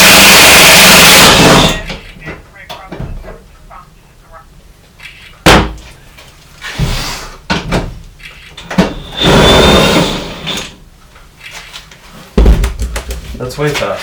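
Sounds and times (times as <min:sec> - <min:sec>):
harsh hissing burst: 0:00.0 - 0:01.8, 0:08.6 - 0:10.8.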